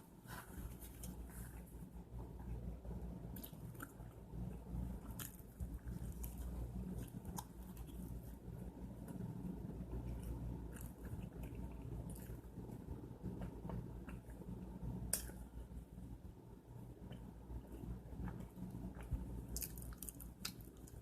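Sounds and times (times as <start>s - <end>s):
steady low hum: 0.0s - 21.0s
person chewing food: 3.3s - 9.2s, 9.9s - 15.4s, 17.0s - 21.0s.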